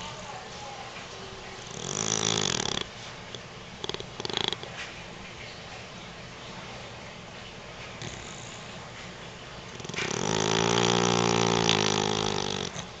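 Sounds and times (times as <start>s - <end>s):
dog snoring loudly: 1.6s - 4.7s, 8.0s - 8.8s, 9.7s - 13.0s
dog breathing quietly: 7.9s - 9.2s.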